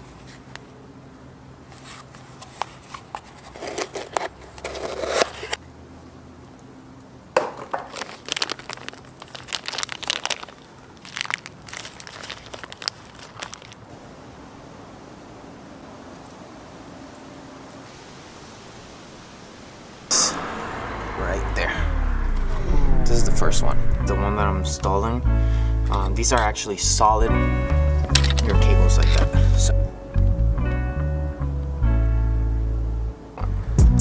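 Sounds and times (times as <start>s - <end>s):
packaging crinkling and rustling: 1.8s - 5.6s, 7.4s - 13.9s, 28.1s - 29.3s.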